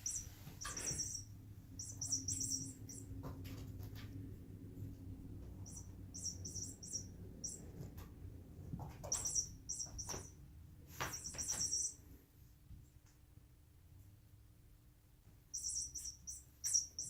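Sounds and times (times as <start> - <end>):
bird toy chirping: 0.0 - 3.2, 5.6 - 7.6, 9.1 - 10.3, 11.1 - 12.0, 15.6 - 17.0.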